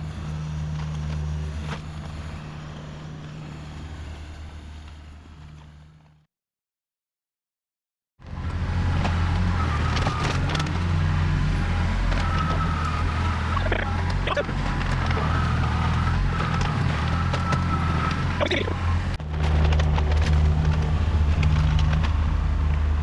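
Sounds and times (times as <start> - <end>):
excavator diesel engine: 0.0 - 6.2, 8.2 - 23.0
steady whine: 0.0 - 6.2.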